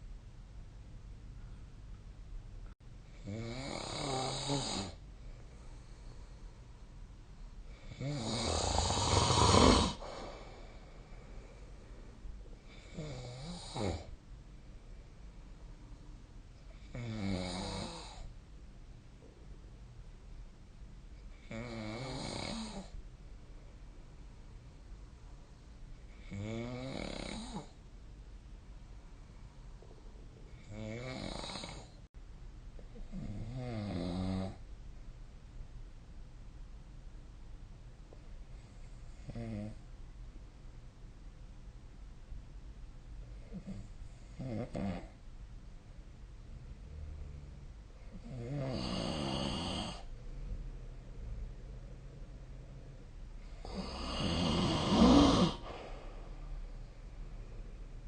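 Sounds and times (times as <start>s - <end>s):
person snoring: 3.1s - 5.0s, 7.7s - 11.6s, 12.6s - 14.1s, 16.7s - 18.3s, 21.4s - 23.0s, 26.2s - 27.8s, 30.5s - 32.0s, 48.1s - 50.1s, 53.4s - 56.8s.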